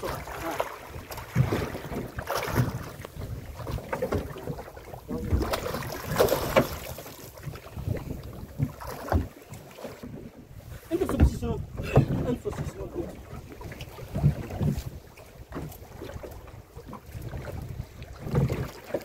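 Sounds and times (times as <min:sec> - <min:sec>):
wind buffeting microphone: 0:07.4 - 0:09.3.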